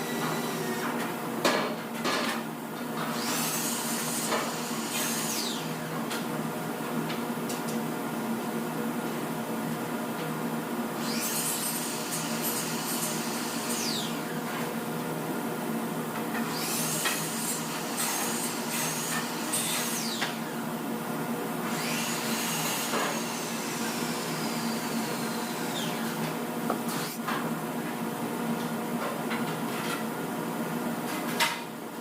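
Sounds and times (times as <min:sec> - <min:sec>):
power tools whirring: 0:00.0 - 0:01.0, 0:03.1 - 0:05.8, 0:11.0 - 0:14.2, 0:21.7 - 0:27.2.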